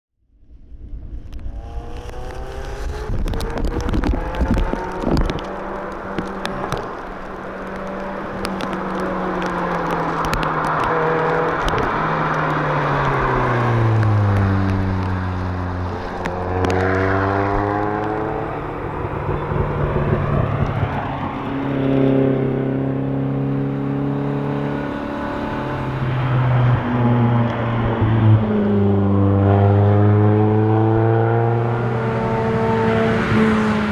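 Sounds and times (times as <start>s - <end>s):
car engine accelerating: 0.6s - 33.9s
clicks: 1.3s - 15.2s.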